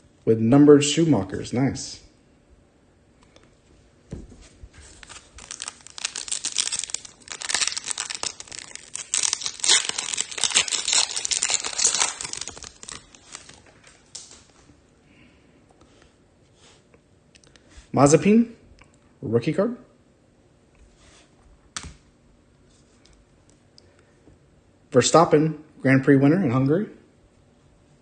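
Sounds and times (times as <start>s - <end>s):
foil wrapper tearing and crinkling: 5.0s - 14.4s.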